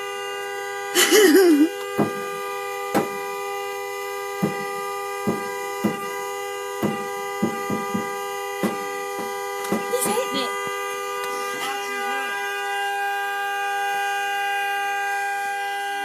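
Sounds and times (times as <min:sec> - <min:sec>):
car horn steady tone: 0:00.0 - 0:16.0
sharp knocks: 0:02.0 - 0:02.3, 0:02.9 - 0:03.2, 0:04.4 - 0:06.2, 0:06.8 - 0:10.0.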